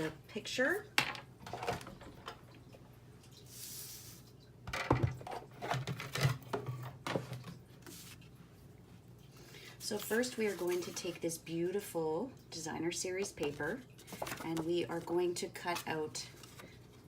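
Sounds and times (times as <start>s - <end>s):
paper sliding rustle: 9.8s - 11.2s.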